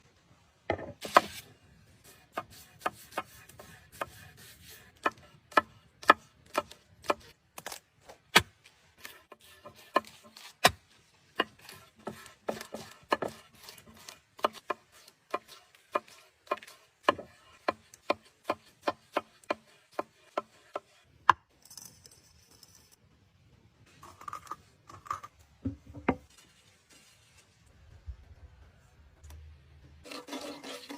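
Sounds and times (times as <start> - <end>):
knife chopping on wooden board: 11.4 - 21.4.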